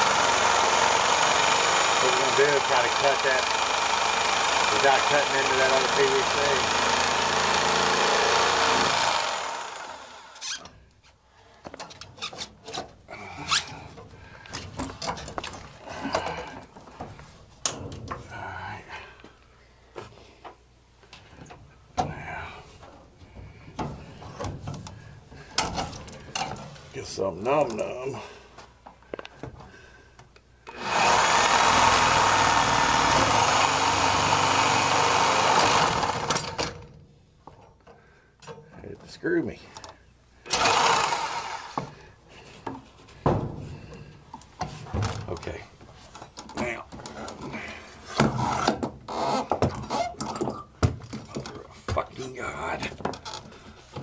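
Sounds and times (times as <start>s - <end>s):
reciprocating saw cutting pipe: 0.0s - 10.6s, 30.7s - 36.6s, 40.5s - 41.9s.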